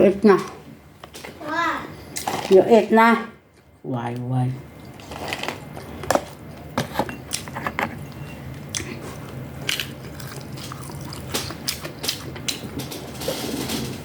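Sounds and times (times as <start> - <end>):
steady low hum: 0.0 - 14.0
biting and chewing food: 4.7 - 13.3.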